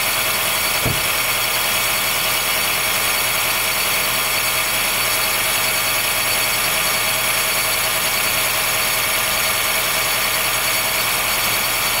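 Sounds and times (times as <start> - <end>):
car engine running: 0.2 - 4.1.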